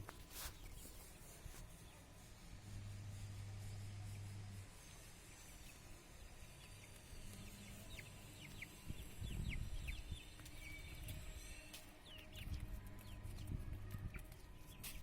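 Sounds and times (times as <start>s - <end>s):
chicks peeping: 5.4s - 11.4s, 12.0s - 15.0s.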